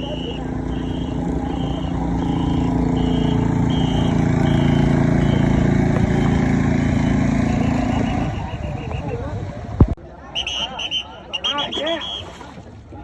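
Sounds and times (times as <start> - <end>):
motorboat engine running: 0.0 - 10.0.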